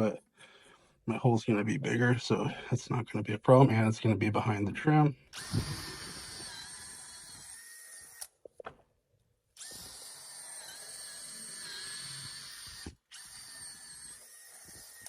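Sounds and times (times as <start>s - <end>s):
power drill boring into wood: 5.3s - 8.3s, 9.6s - 15.0s.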